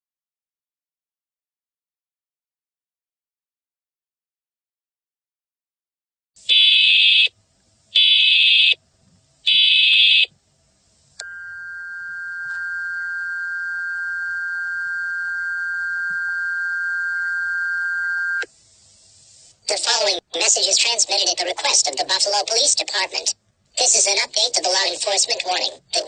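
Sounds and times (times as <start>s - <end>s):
two-tone attention signal: 11.2s - 18.4s.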